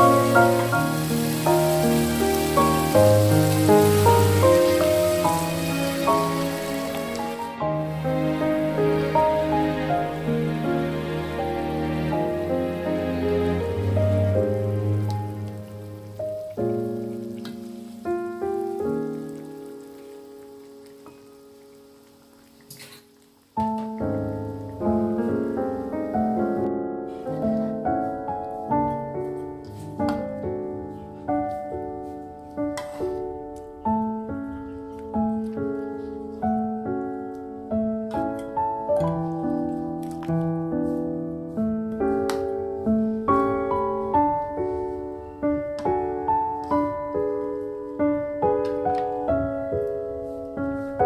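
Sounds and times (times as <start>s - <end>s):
slow piano melody: 0.0s - 51.0s.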